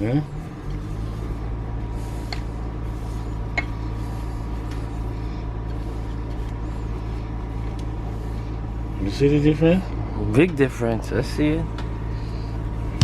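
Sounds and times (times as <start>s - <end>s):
faint constant whine: 0.0s - 13.0s
low machine hum: 0.0s - 13.0s.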